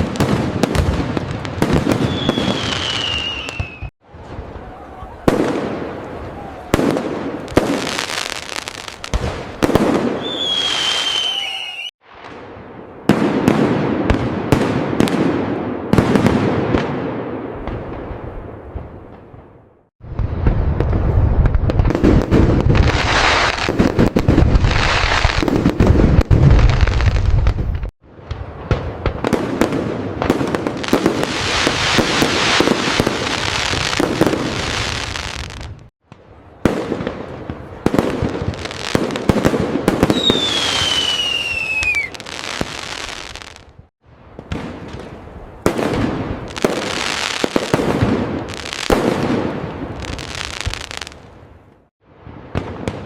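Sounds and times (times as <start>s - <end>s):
fireworks booms and crackling: 0.0s - 53.0s
falling firework whistle: 1.8s - 5.4s, 10.0s - 12.0s, 40.0s - 43.6s.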